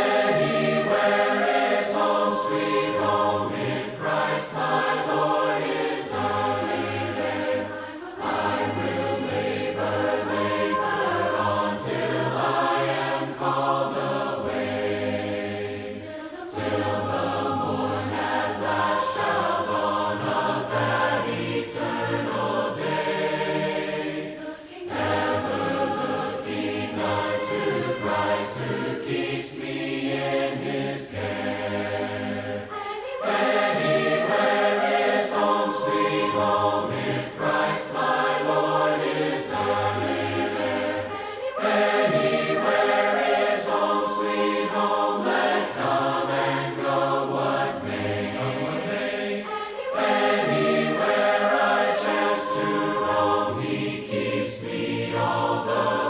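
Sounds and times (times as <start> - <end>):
choir singing a hymn a cappella: 0.0 - 56.0.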